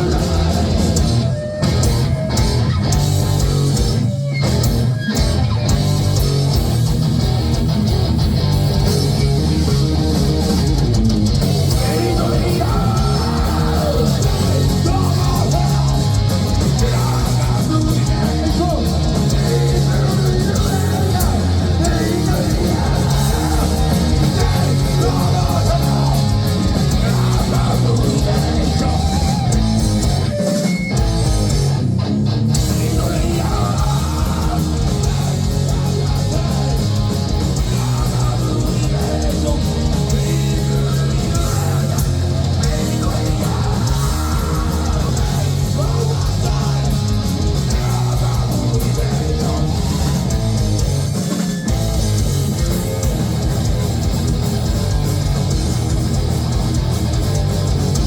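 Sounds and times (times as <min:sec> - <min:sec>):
person singing: 0:00.0 - 0:02.6, 0:11.6 - 0:29.6, 0:32.6 - 0:50.4
guitar-driven metal music: 0:00.0 - 0:58.0.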